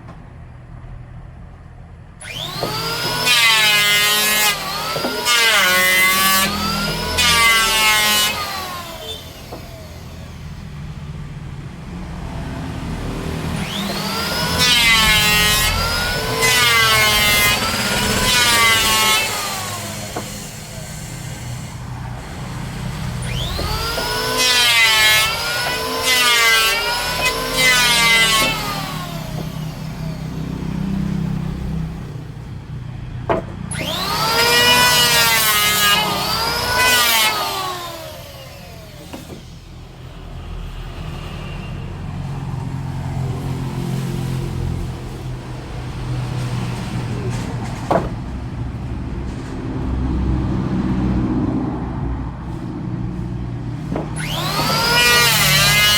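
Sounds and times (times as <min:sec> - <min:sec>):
power tool motor cutting wood: 0:02.2 - 0:11.1, 0:13.2 - 0:32.3, 0:33.3 - 0:40.0, 0:52.4 - 0:55.9
sharp knocks: 0:47.1 - 0:49.6.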